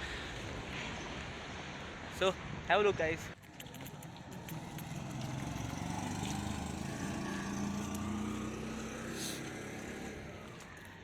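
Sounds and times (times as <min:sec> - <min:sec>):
vehicle engine passing: 0:03.6 - 0:10.7.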